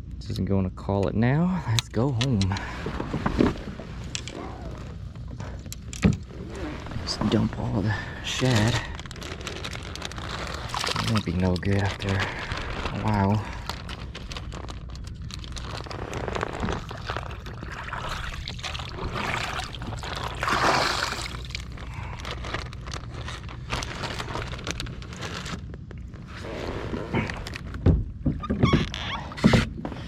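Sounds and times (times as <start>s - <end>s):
scraping on kayak: 2.6s - 21.8s, 26.2s - 27.5s
water sloshing and pouring: 6.2s - 21.9s.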